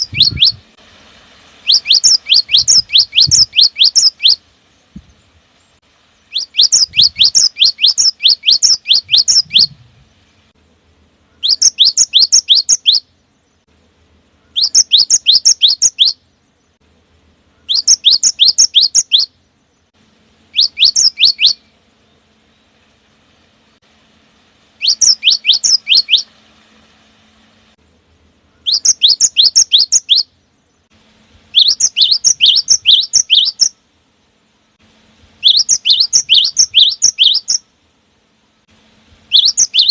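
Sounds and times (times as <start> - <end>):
bird singing high notes: 0.0 - 0.7, 1.6 - 4.4, 6.3 - 9.8, 11.3 - 13.1, 17.5 - 19.4, 20.5 - 21.7, 24.8 - 26.3, 28.5 - 30.3, 31.5 - 33.8, 35.4 - 37.6, 39.3 - 39.9.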